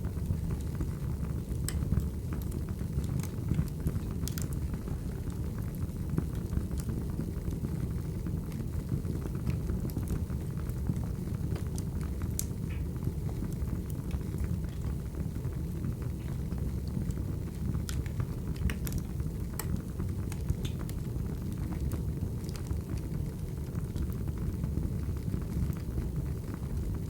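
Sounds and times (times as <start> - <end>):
firewood crackling and popping: 0.0 - 27.0
low rumble of flames: 0.0 - 27.0.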